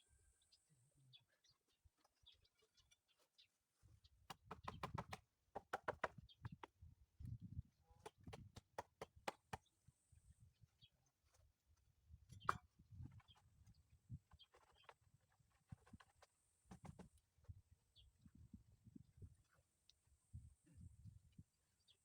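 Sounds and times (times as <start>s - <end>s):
sharp knocks and taps: 4.3s - 6.8s, 8.0s - 9.6s.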